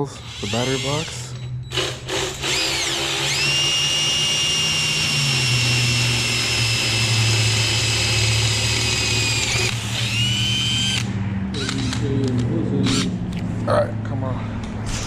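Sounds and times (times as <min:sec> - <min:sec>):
electric drill whining: 0:00.2 - 0:12.0, 0:12.8 - 0:13.1.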